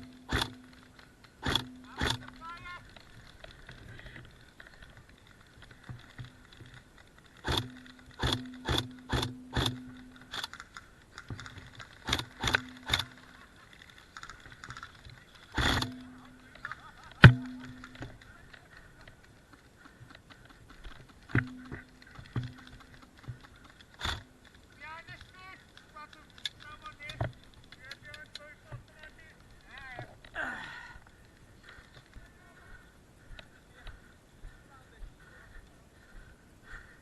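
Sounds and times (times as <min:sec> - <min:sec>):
airsoft gun shots: 0:00.2 - 0:00.6, 0:07.5 - 0:10.0.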